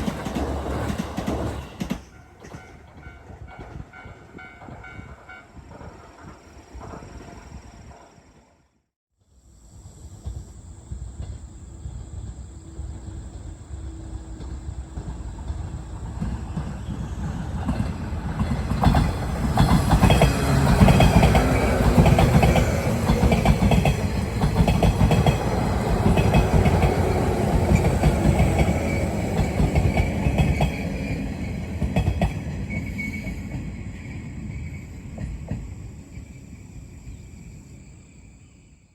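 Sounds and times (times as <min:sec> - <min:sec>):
wheels clacking over rail joints: 0:00.0 - 0:08.2, 0:14.4 - 0:32.8
train passing at speed: 0:00.0 - 0:08.9, 0:09.5 - 0:38.9.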